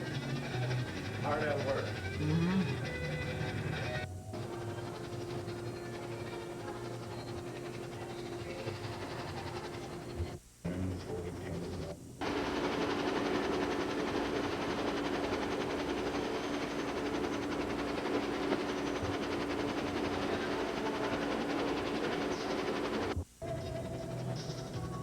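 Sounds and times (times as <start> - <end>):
mechanical humming noise: 0.0 - 25.0.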